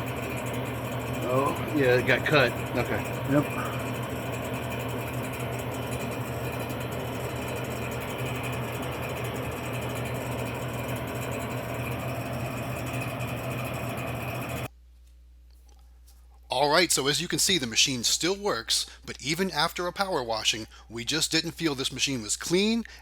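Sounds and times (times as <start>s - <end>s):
vending machine motor and fan hum: 0.0s - 14.7s.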